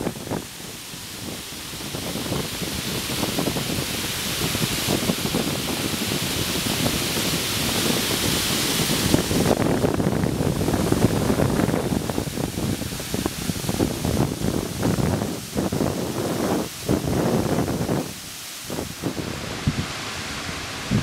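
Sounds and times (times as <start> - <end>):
water rushing down spillway: 0.0 - 21.0.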